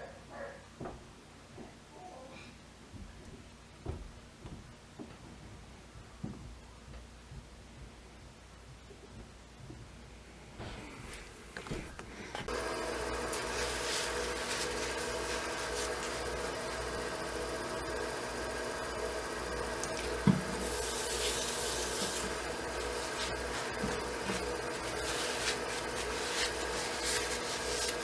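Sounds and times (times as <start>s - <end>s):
wood lathe running: 12.5s - 28.0s.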